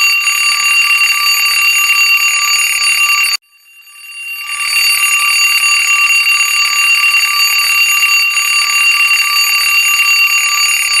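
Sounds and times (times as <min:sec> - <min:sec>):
alarm clock ringing: 0:00.0 - 0:11.0.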